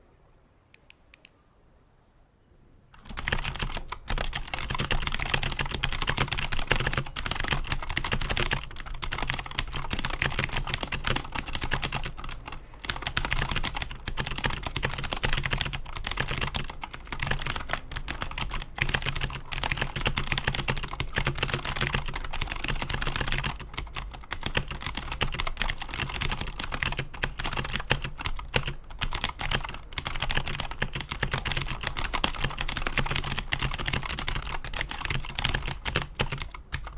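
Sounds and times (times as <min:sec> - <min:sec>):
clicky mechanical keyboard typing: 0:03.0 - 0:36.9.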